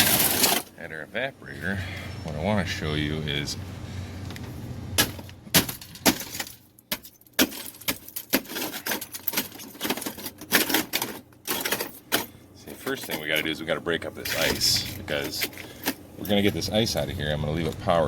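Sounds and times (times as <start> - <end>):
ice and metal clinking: 0.0 - 0.7, 5.8 - 12.3.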